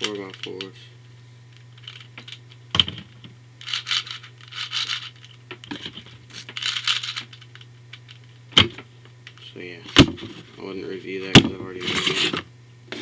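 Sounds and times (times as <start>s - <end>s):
scratchy plastic rustling: 3.6s - 7.5s, 11.7s - 12.4s.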